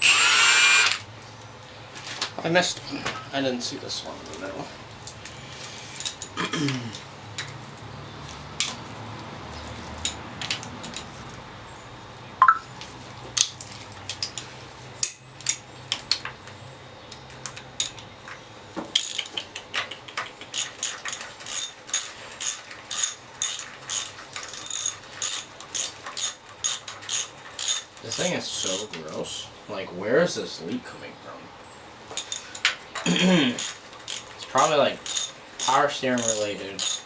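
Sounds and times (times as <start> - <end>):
ratchet wrench clicking: 19.0 - 19.3, 20.5 - 28.9, 32.2 - 32.6, 33.6 - 37.0
tools clinking on metal: 32.1 - 37.0.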